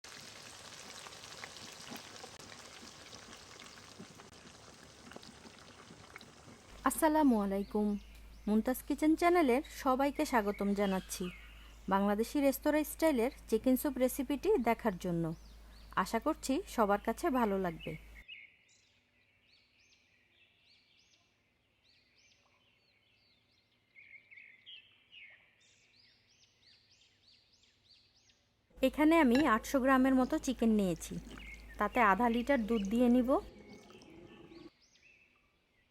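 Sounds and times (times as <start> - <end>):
food sizzling with small pops: 0.0 - 7.0, 28.9 - 34.1
birds chirping: 2.7 - 18.6, 28.8 - 35.9.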